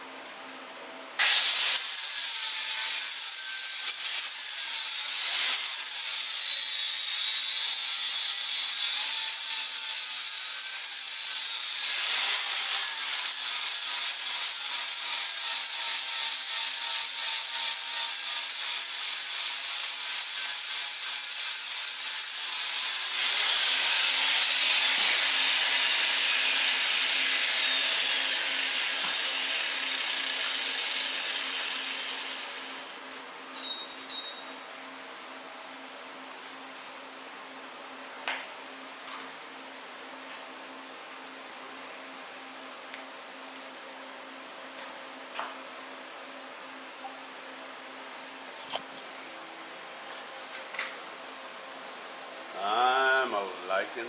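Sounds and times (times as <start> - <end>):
angle grinder grinding metal: 1.2 - 33.0.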